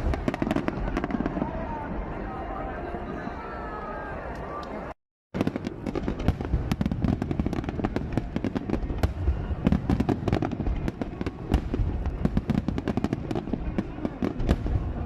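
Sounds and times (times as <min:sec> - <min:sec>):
fireworks cracks and bangs: 0:00.0 - 0:02.0, 0:05.4 - 0:15.0.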